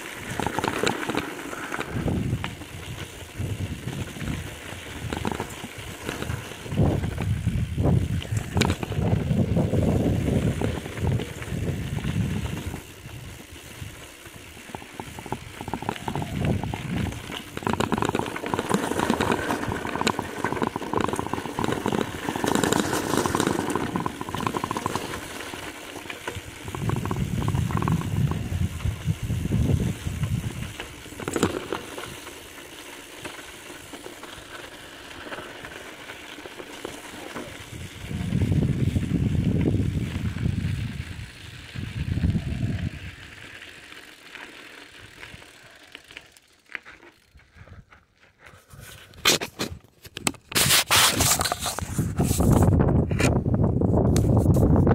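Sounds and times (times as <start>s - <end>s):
low wind buffeting: 0.0s - 32.3s, 37.4s - 43.5s, 51.8s - 54.9s
bicycle rolling on dirt trail: 0.0s - 54.9s.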